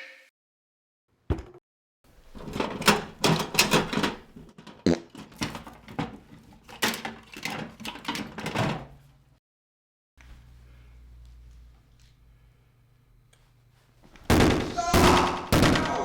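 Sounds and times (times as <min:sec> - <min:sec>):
hand tools clattering in toolbox: 0:02.4 - 0:08.8.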